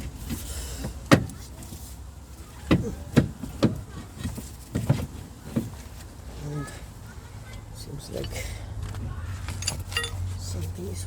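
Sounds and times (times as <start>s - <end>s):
metallic knocks of tools: 9.5s - 10.2s.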